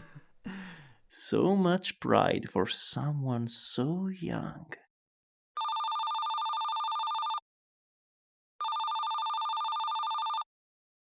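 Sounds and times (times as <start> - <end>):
telephone ringing: 5.6 - 7.4, 8.6 - 10.5.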